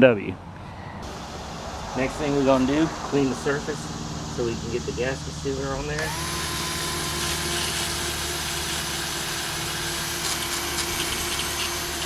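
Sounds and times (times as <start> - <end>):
power tool abrading metal: 5.8 - 12.0.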